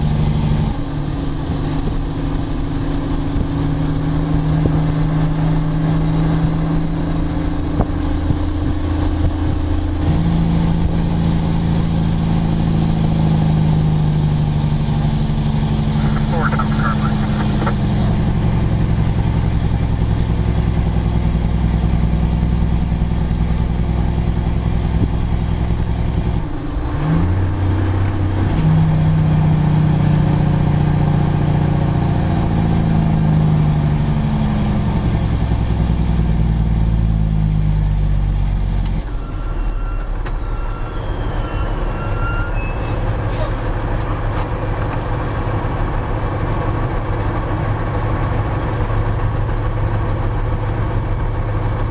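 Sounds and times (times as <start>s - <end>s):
truck diesel engine running: 0.0s - 51.9s
high whistle rising and falling: 38.0s - 43.6s.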